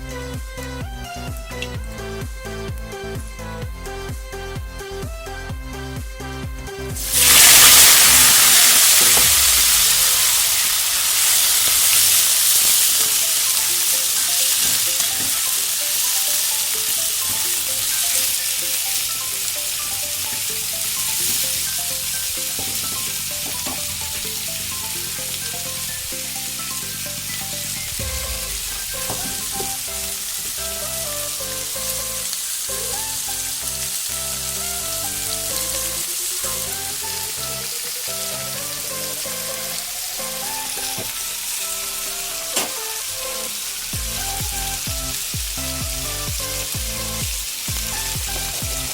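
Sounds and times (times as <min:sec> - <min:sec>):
food sizzling in hot oil: 0:06.8 - 0:48.9.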